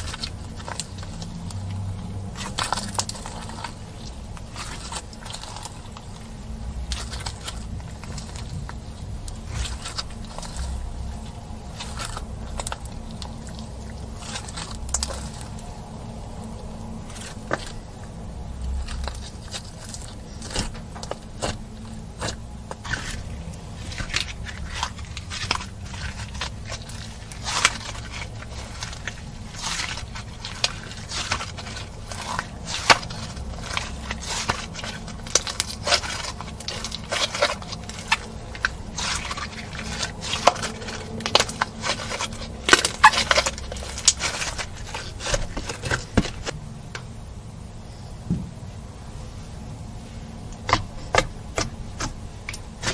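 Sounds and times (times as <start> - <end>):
steady low hum: 0.0 - 52.9
slime squishing and clicking: 16.4 - 46.5, 50.5 - 52.9.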